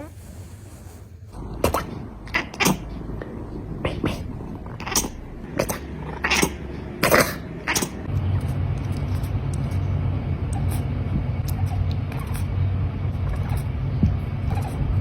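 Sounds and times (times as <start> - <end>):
cat purring: 10.5 - 15.0.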